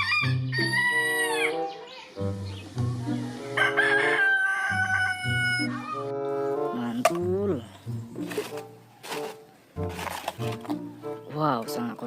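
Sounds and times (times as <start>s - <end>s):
rooster crowing: 0.0s - 1.6s, 3.6s - 6.0s.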